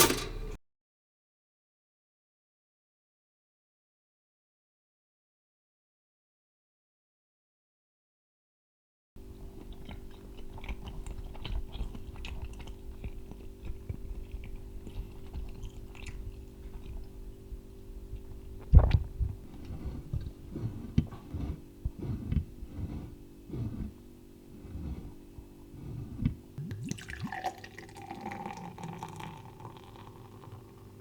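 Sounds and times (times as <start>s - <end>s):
steady low hum: 9.2s - 31.0s
crunching and crackling: 9.4s - 22.8s.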